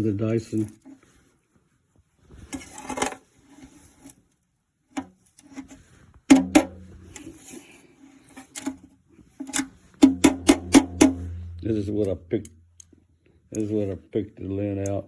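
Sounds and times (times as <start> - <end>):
knocks and clicks: 6.3 - 7.0, 9.5 - 12.9
low hum: 10.0 - 13.4.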